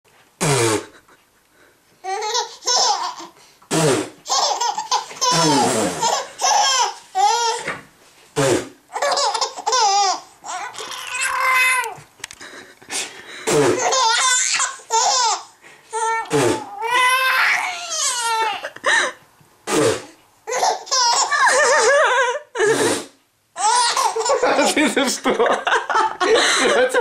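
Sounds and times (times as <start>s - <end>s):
baby laughing: 2.0s - 3.4s, 4.2s - 7.8s, 8.9s - 12.0s, 13.5s - 19.1s, 20.4s - 22.6s, 23.6s - 25.0s
adult sneeze-like sounds: 3.7s - 4.2s, 5.3s - 6.2s, 8.4s - 8.8s, 12.9s - 13.9s, 16.3s - 16.7s, 19.7s - 20.2s, 22.6s - 23.2s.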